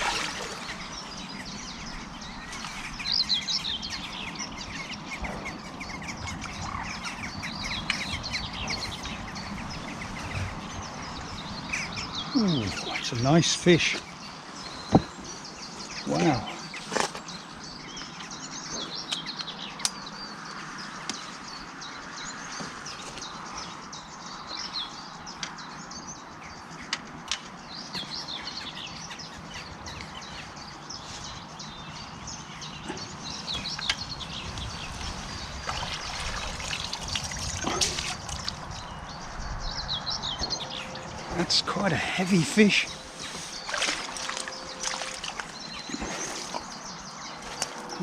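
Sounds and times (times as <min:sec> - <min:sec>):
water splashing and trickling: 0:00.0 - 0:03.9, 0:06.0 - 0:14.5, 0:32.4 - 0:39.3, 0:40.4 - 0:48.0
small birds chirping and singing: 0:00.0 - 0:48.0.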